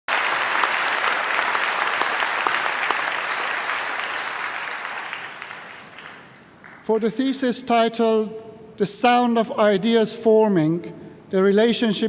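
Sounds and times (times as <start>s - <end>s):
audience applauding: 0.0s - 6.8s.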